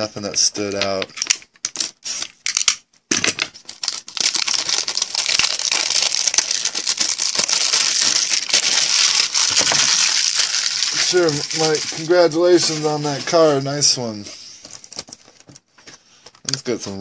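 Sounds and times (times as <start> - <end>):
plastic packaging crinkling: 0.4 - 13.8.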